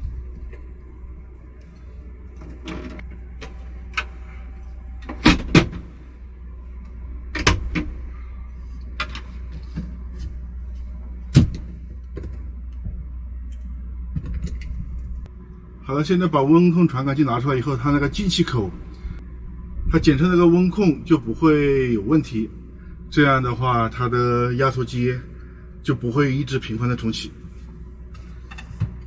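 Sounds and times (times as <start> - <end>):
air conditioner low hum: 0.0 - 29.0.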